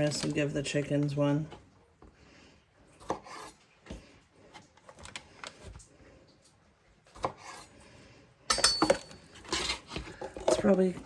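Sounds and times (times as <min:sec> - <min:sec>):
knife on wooden cutting board: 0:03.0 - 0:04.0, 0:07.2 - 0:07.7, 0:09.4 - 0:10.6.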